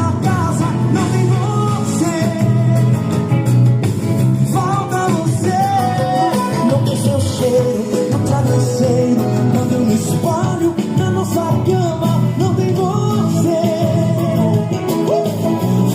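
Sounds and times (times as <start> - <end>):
song with singing through speaker: 0.0 - 15.9.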